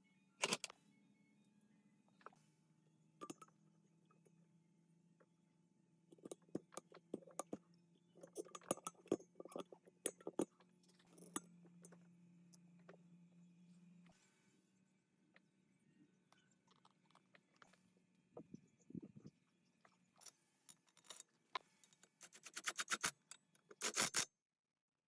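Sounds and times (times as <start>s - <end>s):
small metal parts clinking: 0.4s - 0.7s, 8.2s - 12.0s, 20.1s - 24.3s.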